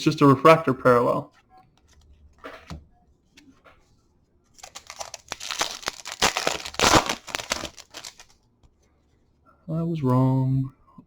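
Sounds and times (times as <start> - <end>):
foil wrapper tearing and crinkling: 4.6 - 8.3.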